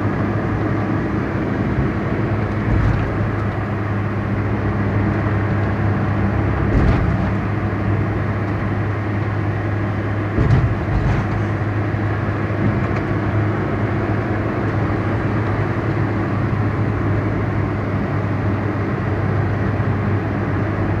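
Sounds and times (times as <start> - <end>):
car engine and road noise: 0.0 - 21.0
low thumps: 2.4 - 3.8, 6.5 - 8.1, 10.3 - 11.8.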